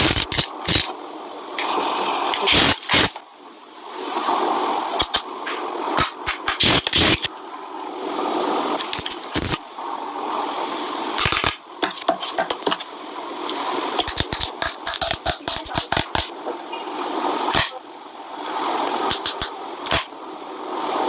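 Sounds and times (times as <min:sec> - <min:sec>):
cosmetic cases clicking and tapping: 0:11.2 - 0:12.9, 0:14.0 - 0:16.3, 0:19.1 - 0:20.1.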